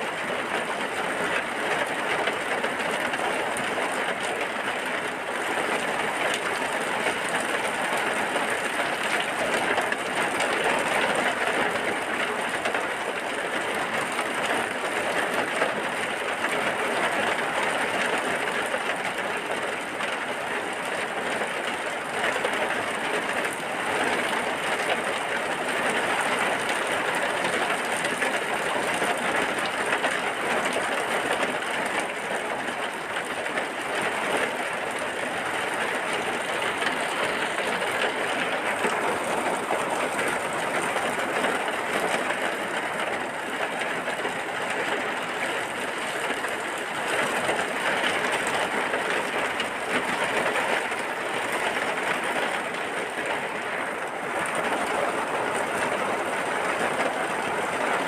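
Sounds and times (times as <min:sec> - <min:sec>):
steady rain: 0:00.0 - 0:58.0.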